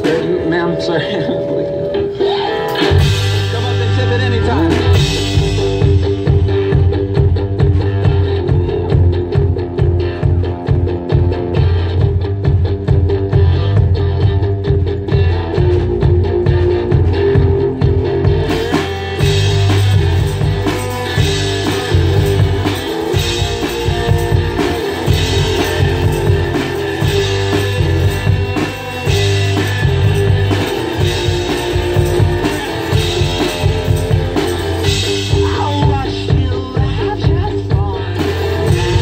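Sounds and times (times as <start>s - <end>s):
strummed guitar: 0.0s - 39.0s
thumbed bass line: 1.7s - 39.0s.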